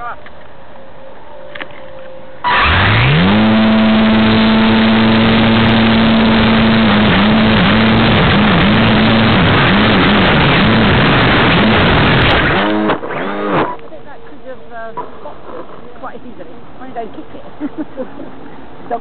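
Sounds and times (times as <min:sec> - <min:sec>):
model plane propeller motor: 0:02.4 - 0:13.7.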